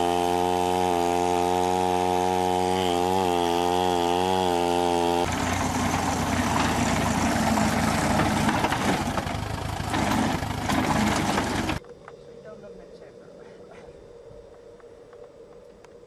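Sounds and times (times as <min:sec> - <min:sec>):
rough engine-driven machine: 0:00.0 - 0:11.8
saw whining: 0:00.0 - 0:11.8.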